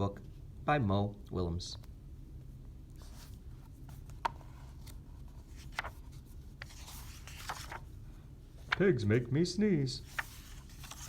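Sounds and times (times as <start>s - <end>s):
low steady hum: 0.0s - 11.0s
paper rustling: 3.0s - 8.0s, 10.0s - 11.0s.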